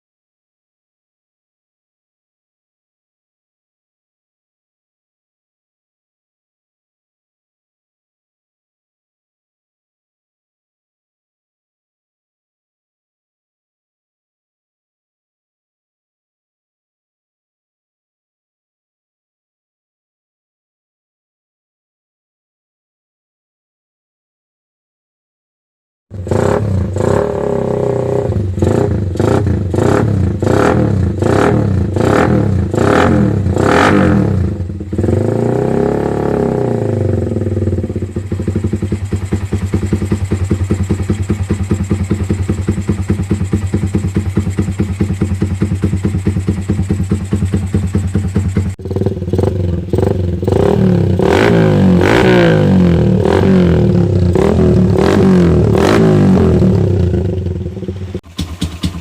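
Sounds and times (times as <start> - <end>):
motorcycle engine revving: 26.1 - 59.0
motorcycle engine idling: 26.2 - 59.0.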